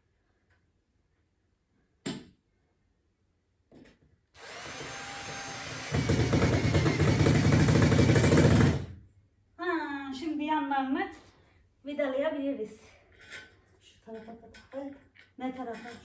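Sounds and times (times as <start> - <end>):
electric drill driving a screw: 4.4 - 8.9.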